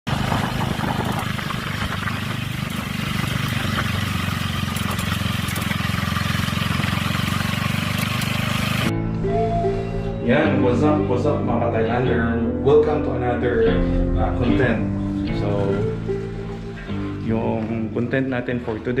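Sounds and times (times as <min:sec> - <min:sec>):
mudguard rattling against engine: 0:00.1 - 0:08.9
scooter engine idling: 0:00.1 - 0:08.9.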